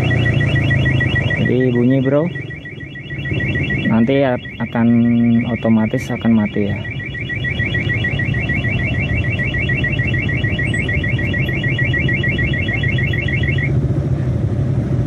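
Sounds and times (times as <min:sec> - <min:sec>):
motorcycle engine running: 0:00.0 - 0:04.1
alarm siren fast high chirps: 0:00.0 - 0:13.7.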